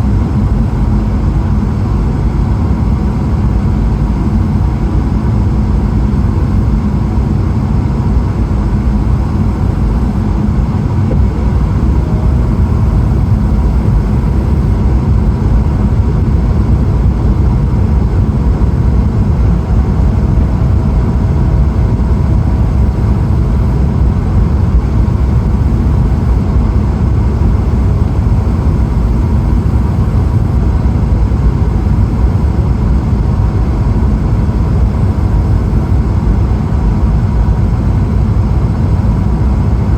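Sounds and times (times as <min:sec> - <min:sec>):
airflow rush in cabin: 0:00.0 - 0:39.9
jet engines droning: 0:00.0 - 0:39.9
faint steady tones: 0:07.7 - 0:30.9.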